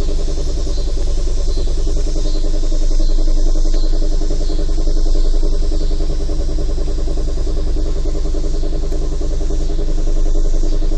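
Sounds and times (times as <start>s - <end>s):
car engine running: 0.0s - 10.9s
engine knocking and whirring: 0.0s - 10.9s.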